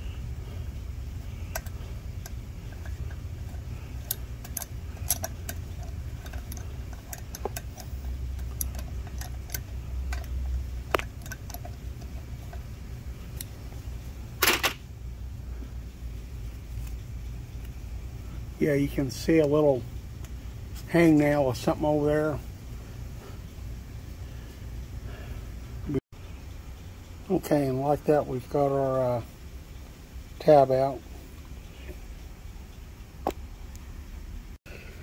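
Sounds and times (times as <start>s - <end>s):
steady low hum: 0.0s - 35.0s
metallic clicks of hand tool: 1.5s - 12.6s
metal clatter: 1.5s - 12.7s.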